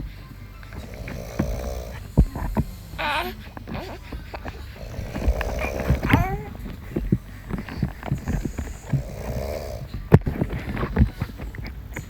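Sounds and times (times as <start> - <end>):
man snoring: 0.7 - 10.1.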